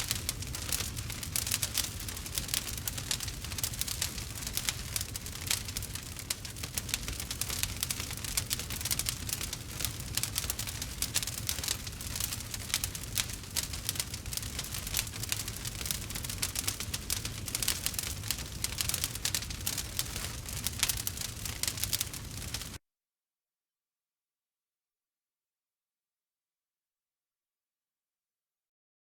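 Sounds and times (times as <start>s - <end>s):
campfire crackling: 0.0s - 22.8s.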